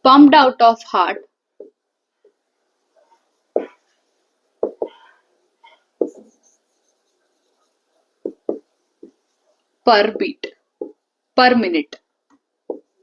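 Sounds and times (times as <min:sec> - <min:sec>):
pen scratching on paper: 0:02.9 - 0:09.6.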